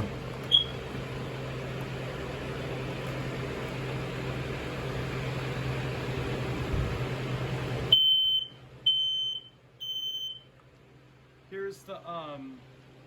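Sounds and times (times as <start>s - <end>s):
smoke alarm high-pitched beeps: 0.5s - 0.8s, 7.9s - 10.5s.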